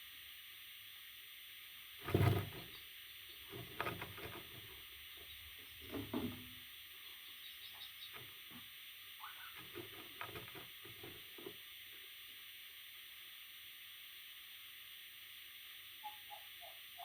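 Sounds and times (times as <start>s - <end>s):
steady background hiss: 0.0s - 17.0s
parrot chicks scrabbling: 2.0s - 8.6s, 9.2s - 11.5s.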